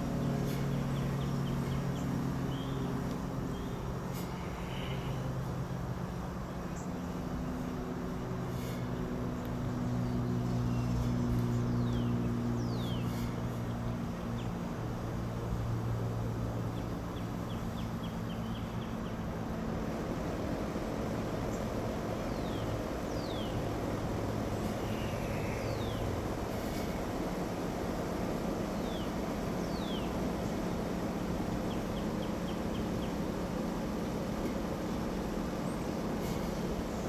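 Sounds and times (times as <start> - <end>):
low mechanical hum: 0.0 - 37.0
songbirds whistling: 9.4 - 13.6, 21.5 - 27.1, 28.5 - 30.9.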